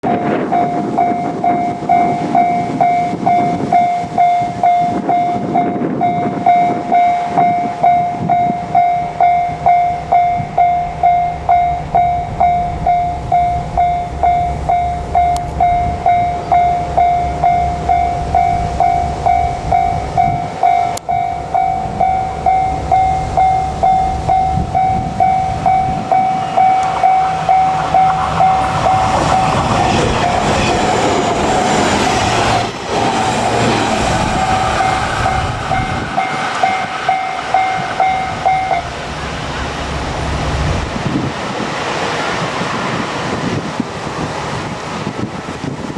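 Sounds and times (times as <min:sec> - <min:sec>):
electric train running: 0:00.0 - 0:45.9
level crossing bell dinging: 0:35.3 - 0:38.9.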